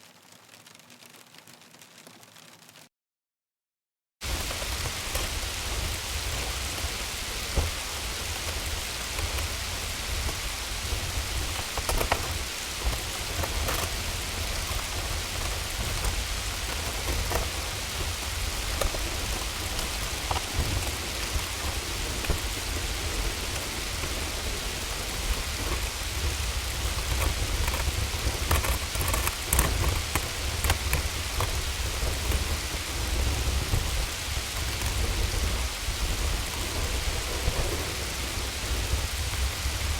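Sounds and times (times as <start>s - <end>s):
hailstones ticking: 0.0s - 2.8s, 4.2s - 39.9s
heavy precipitation hiss: 4.2s - 39.9s.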